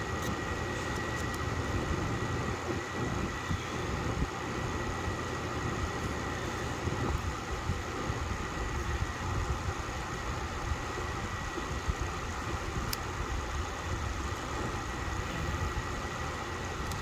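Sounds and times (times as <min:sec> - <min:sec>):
thin high whine: 0:00.0 - 0:10.5
background rumble and hiss: 0:00.0 - 0:17.0.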